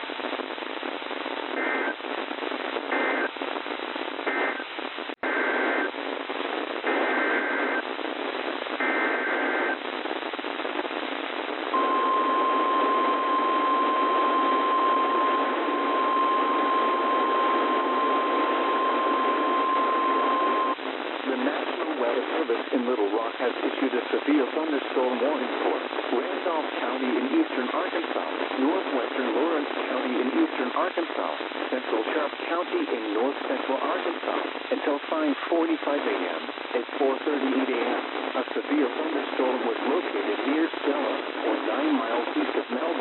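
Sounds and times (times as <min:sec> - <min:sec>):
radio static hiss: 0:00.0 - 0:43.0
data bursts: 0:11.8 - 0:20.8
two-tone digital data chirps: 0:11.8 - 0:20.8.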